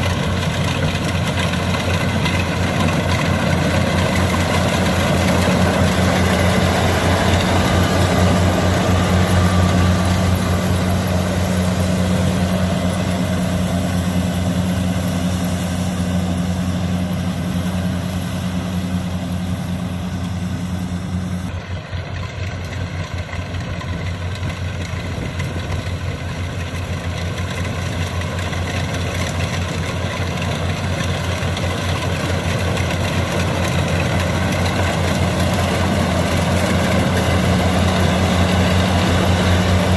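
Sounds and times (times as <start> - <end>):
farm machine engine humming: 0.0 - 39.9.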